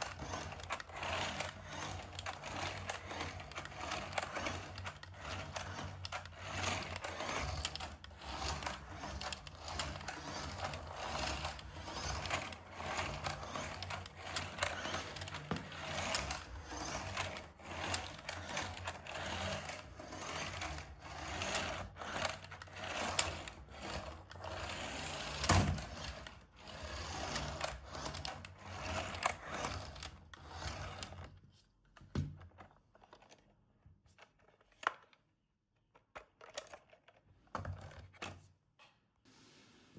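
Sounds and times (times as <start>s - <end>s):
gearbox clicks and scrapes: 0.0s - 31.3s
toy car motor whirring: 0.0s - 31.3s.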